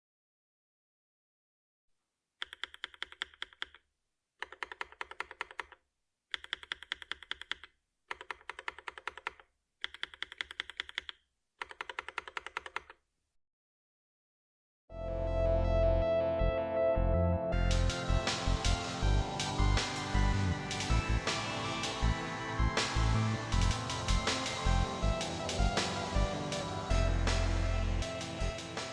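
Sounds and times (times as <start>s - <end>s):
mechanical keyboard keystrokes: 2.4s - 3.8s, 4.4s - 13.0s.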